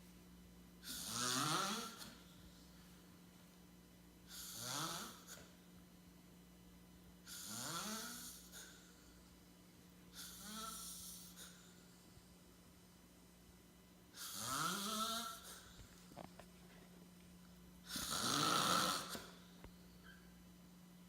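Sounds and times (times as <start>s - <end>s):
faint steady hum: 0.0s - 21.0s
man snoring: 0.8s - 2.2s, 4.3s - 5.5s, 7.3s - 8.7s, 10.2s - 11.4s, 14.2s - 15.5s, 17.9s - 19.4s.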